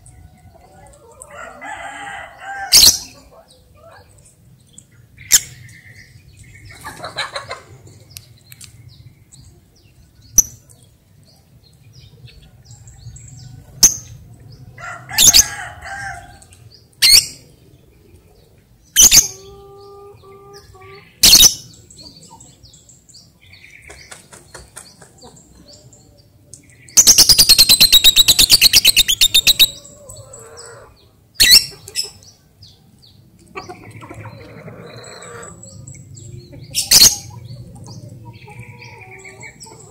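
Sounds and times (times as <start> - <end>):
bird chattering trill: 27.0 - 29.8.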